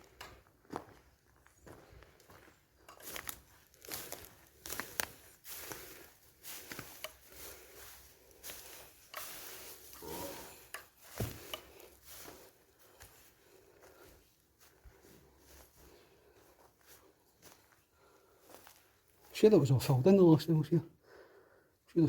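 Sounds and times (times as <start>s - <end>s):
cracks and rustles underfoot: 0.0s - 19.4s
footsteps crunching on floor: 0.6s - 19.4s.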